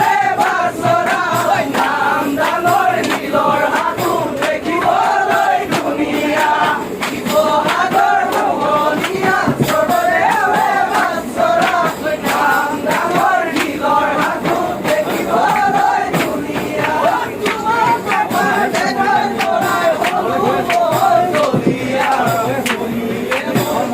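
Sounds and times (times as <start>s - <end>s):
crowd talking and calling out: 0.0s - 23.9s.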